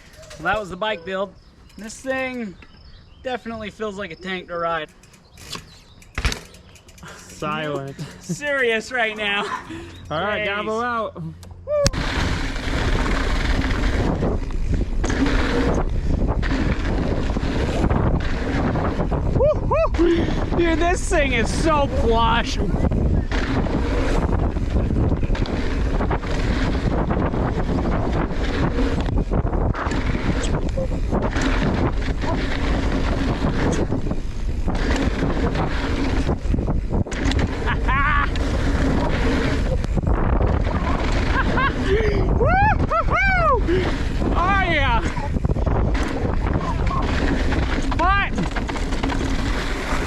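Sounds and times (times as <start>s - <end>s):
bike tyres rumbling on ground: 0.0s - 11.0s, 11.8s - 50.0s
wind buffeting microphone: 11.7s - 50.0s.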